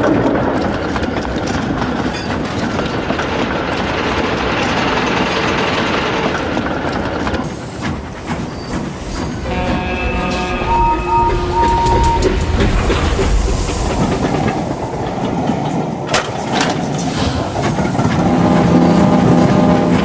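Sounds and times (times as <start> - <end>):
train rumbling on rails: 0.0 - 20.0
short train horn toots: 9.2 - 13.8
held train horn chord: 9.3 - 14.1, 18.3 - 20.0.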